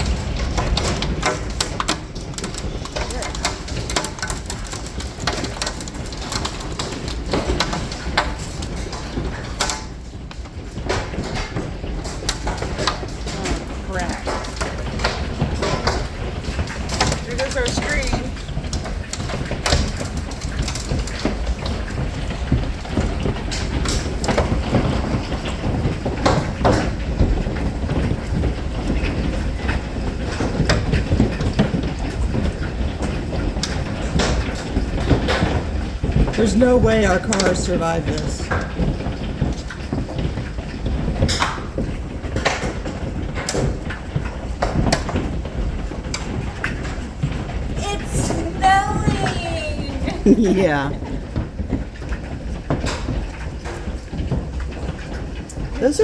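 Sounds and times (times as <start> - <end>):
low storm rumble: 0.0 - 41.3
hailstones clattering: 0.0 - 56.0.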